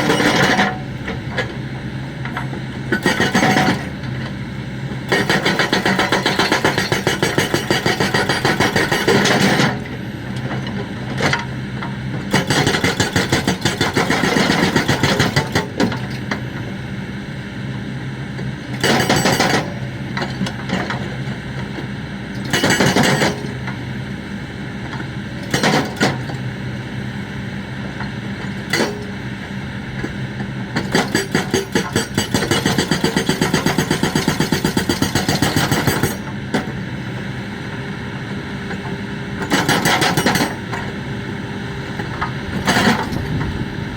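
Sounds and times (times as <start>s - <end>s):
hydraulic breaker hammering: 30.7s - 36.8s, 39.4s - 41.0s
diesel engine running: 35.6s - 43.9s.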